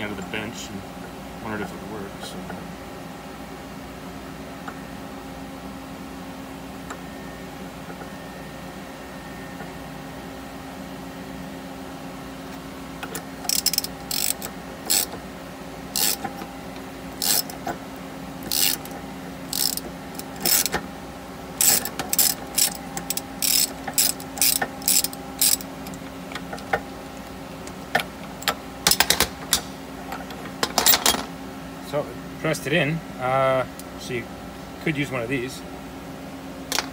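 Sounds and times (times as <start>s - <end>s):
steady low hum: 0.0s - 36.9s
ratcheting clicks of hand tool: 13.0s - 15.2s, 16.0s - 16.3s, 17.2s - 17.6s, 18.4s - 20.8s, 21.6s - 26.7s.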